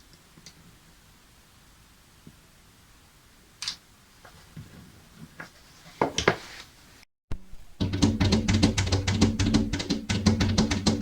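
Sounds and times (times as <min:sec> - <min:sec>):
drum-driven background music: 0:07.3 - 0:11.0.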